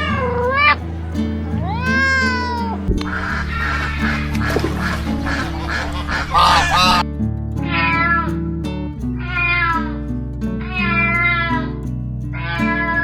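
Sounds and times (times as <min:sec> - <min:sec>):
cat meowing: 0:00.0 - 0:00.8, 0:01.4 - 0:07.0
rough animal call: 0:00.0 - 0:07.0
background music: 0:00.0 - 0:10.0.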